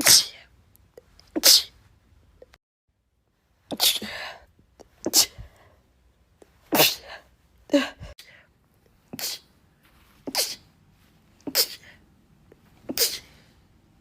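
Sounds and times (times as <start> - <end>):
person sneezing: 0.0 - 0.4, 1.3 - 1.8, 3.7 - 5.6, 6.6 - 8.2, 9.1 - 9.5, 10.3 - 10.7, 11.4 - 12.0, 12.8 - 13.5.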